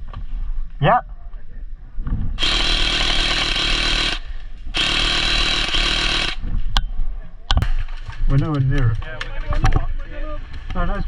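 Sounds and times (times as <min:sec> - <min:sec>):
airsoft gun rapid firing: 0:02.4 - 0:06.4
electric motor whine: 0:04.8 - 0:06.4.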